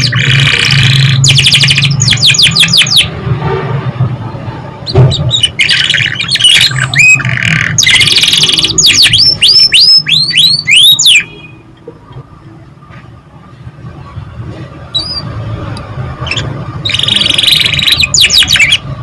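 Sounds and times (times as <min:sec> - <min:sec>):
canary singing: 0:00.0 - 0:03.2, 0:04.8 - 0:11.7, 0:14.9 - 0:15.5, 0:16.1 - 0:19.0.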